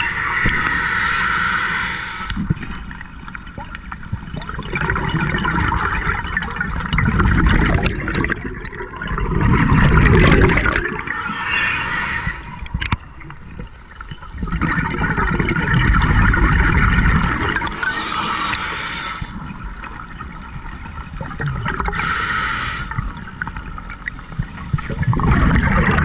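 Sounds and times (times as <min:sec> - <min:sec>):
diver inhaling through regulator: 0:00.0 - 0:02.4, 0:11.0 - 0:12.9, 0:17.4 - 0:19.4, 0:21.0 - 0:23.0, 0:24.1 - 0:25.2
exhaled bubbles rushing: 0:03.6 - 0:18.4, 0:19.4 - 0:22.0, 0:23.0 - 0:26.0.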